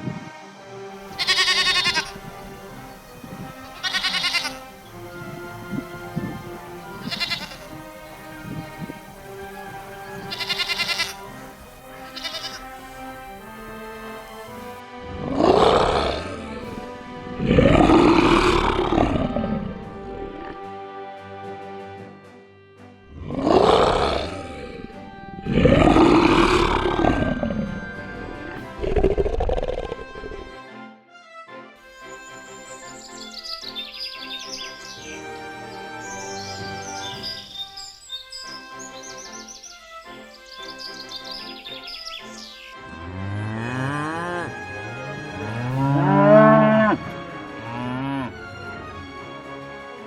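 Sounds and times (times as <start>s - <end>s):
soft background music: 0.0s - 50.0s
cow mooing: 6.0s - 7.8s, 10.2s - 11.3s, 12.0s - 13.0s, 23.1s - 27.4s, 43.0s - 48.4s
big cat roaring: 15.1s - 16.7s, 17.3s - 20.6s, 23.1s - 27.8s.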